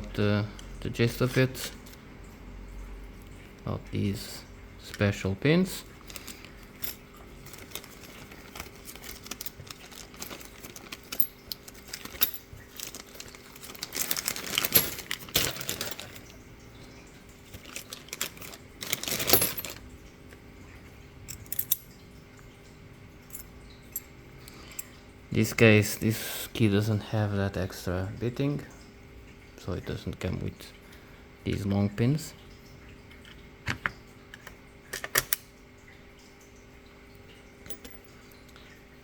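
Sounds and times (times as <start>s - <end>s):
metal parts clattering: 6.1s - 16.3s, 17.5s - 19.8s
small metal lock parts clinking: 6.1s - 16.3s, 17.7s - 19.8s, 21.3s - 22.0s, 37.6s - 38.1s.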